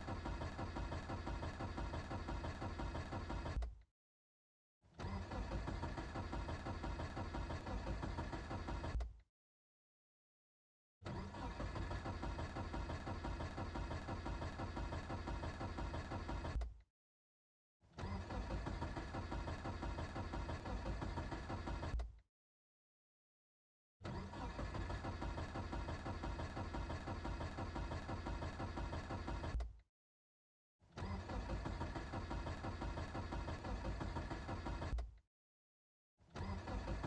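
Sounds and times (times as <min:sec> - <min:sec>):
car engine cranking: 0:00.0 - 0:03.8, 0:05.0 - 0:09.1, 0:11.1 - 0:16.7, 0:18.0 - 0:22.1, 0:24.0 - 0:29.7, 0:30.9 - 0:35.1, 0:36.4 - 0:37.0.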